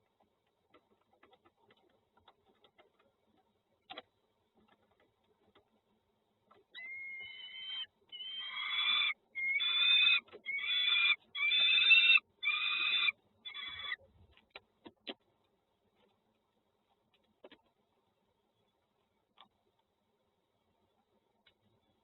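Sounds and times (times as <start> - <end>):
nestling birds begging calls: 6.7 - 14.0.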